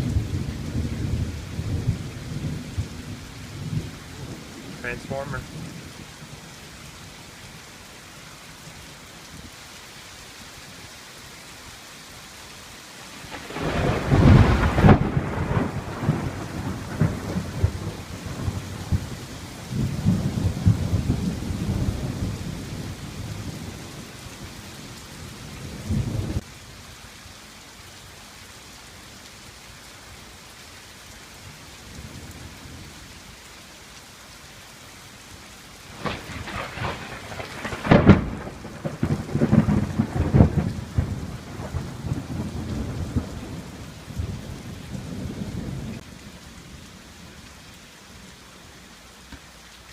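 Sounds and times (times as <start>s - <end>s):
steady rain: 0.0s - 49.9s
thunder cracking and rumbling: 13.3s - 24.0s, 35.9s - 46.1s.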